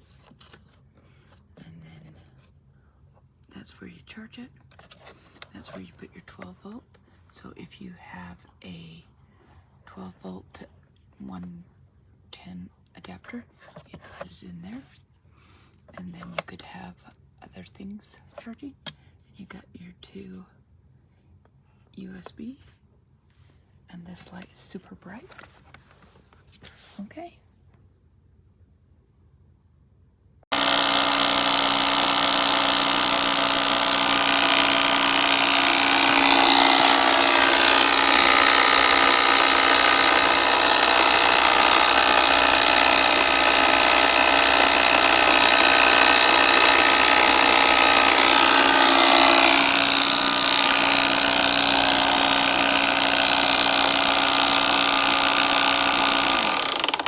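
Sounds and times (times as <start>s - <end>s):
air compressor running: 30.5s - 57.0s.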